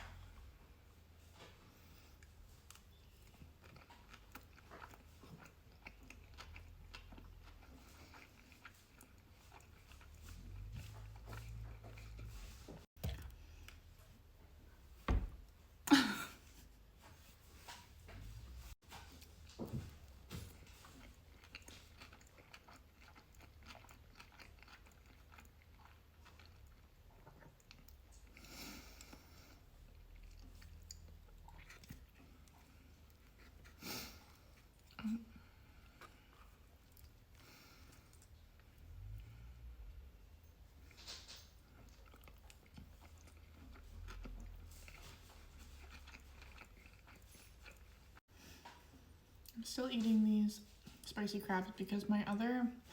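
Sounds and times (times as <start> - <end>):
close chewing with mouth clicks: 1.4 - 14.4, 17.0 - 39.6, 40.5 - 49.6
close chewing mouth clicks: 21.0 - 29.2, 41.8 - 48.2.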